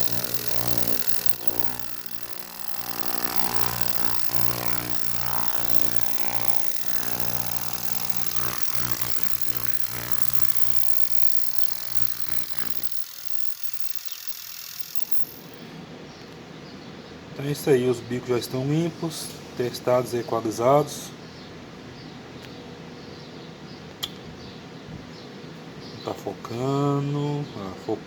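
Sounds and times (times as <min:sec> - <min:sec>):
ultrasonic cleaner humming: 0:00.0 - 0:15.7.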